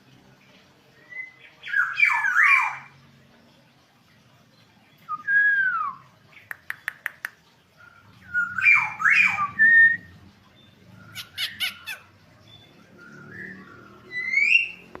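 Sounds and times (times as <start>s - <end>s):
bird whistling: 8.3s - 10.1s, 13.0s - 15.0s.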